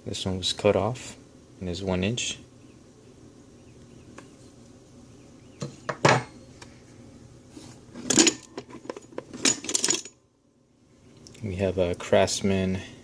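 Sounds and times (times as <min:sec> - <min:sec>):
metal hand tools clinking: 0:09.4 - 0:10.2.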